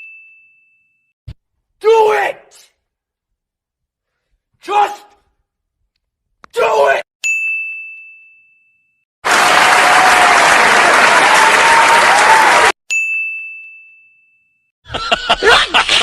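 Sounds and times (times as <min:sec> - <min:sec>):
applause: 0:09.2 - 0:12.8
high bell ding: 0:12.9 - 0:14.7.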